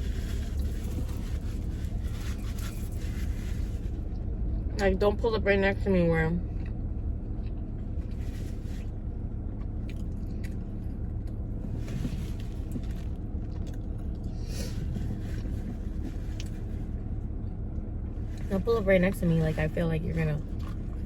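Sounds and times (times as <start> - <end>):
car cabin rumble: 0.0 - 21.0
person chewing: 9.7 - 16.6.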